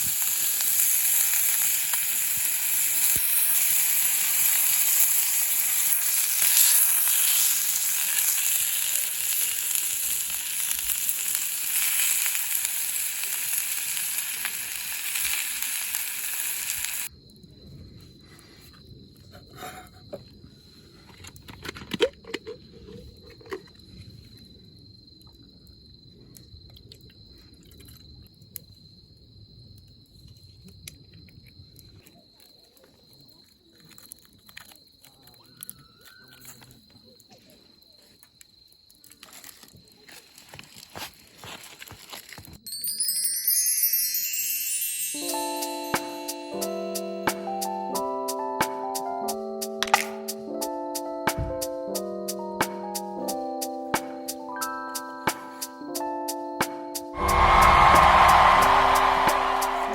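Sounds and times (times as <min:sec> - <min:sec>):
food sizzling in a pan: 0:00.0 - 0:17.1
high insect trill: 0:00.0 - 0:17.2, 0:37.8 - 0:48.4.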